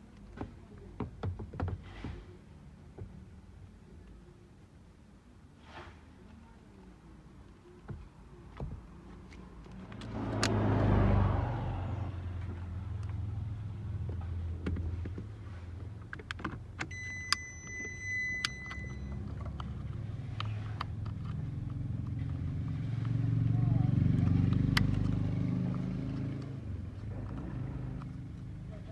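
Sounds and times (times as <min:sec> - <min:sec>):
car engine starting and running: 0:09.6 - 0:28.9
high electronic beep: 0:16.9 - 0:19.2.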